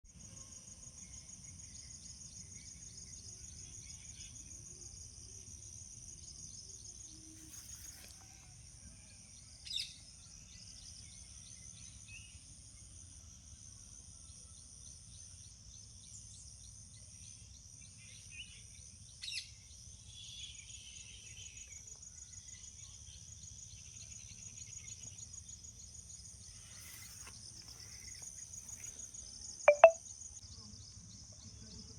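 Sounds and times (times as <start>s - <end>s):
crickets chirping: 22.6s - 31.8s
bird chirps: 29.7s - 30.0s.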